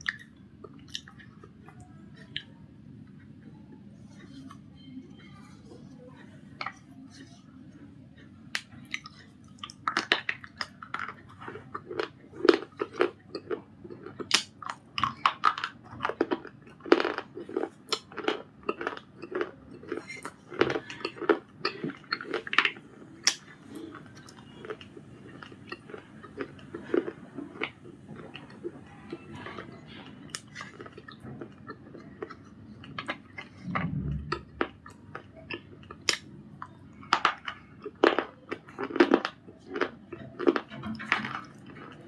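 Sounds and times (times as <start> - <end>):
biscuit crunching: 8.6 - 34.2, 34.9 - 42.0.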